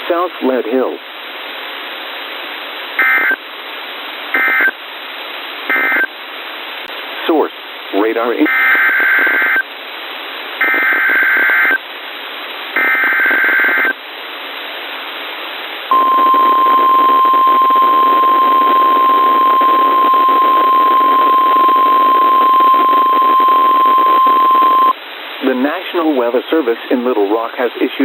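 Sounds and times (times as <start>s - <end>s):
radio static hiss: 0.0s - 28.0s
steady warning alarm tone: 15.9s - 24.9s.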